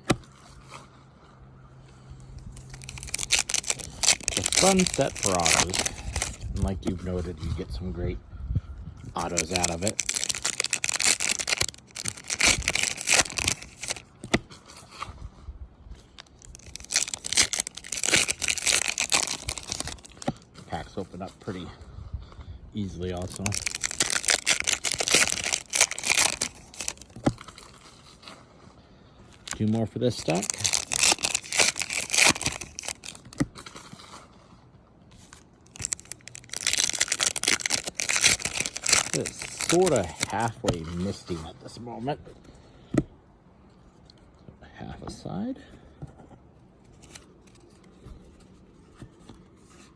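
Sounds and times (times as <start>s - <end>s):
foil wrapper tearing and crinkling: 2.5s - 6.9s, 9.2s - 14.4s, 16.1s - 20.4s, 22.9s - 28.0s, 29.4s - 34.1s, 35.2s - 41.4s.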